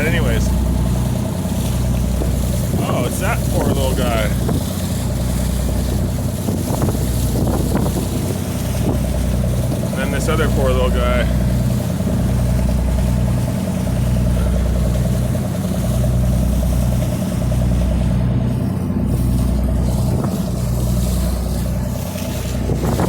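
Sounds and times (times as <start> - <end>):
boat engine droning: 0.0 - 23.0.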